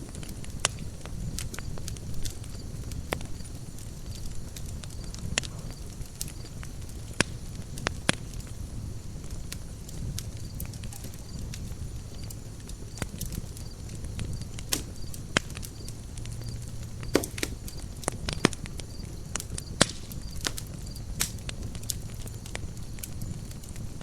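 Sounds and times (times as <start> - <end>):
low fire rumble: 0.0 - 24.0
wood crackling and popping: 0.0 - 24.0.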